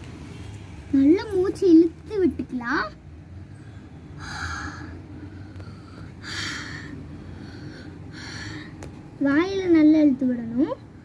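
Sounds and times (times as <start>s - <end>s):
child breathing deeply: 3.6s - 8.8s.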